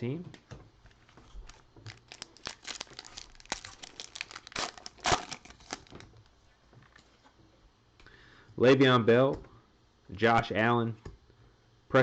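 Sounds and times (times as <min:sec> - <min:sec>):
foil wrapper tearing and crinkling: 0:01.4 - 0:06.0.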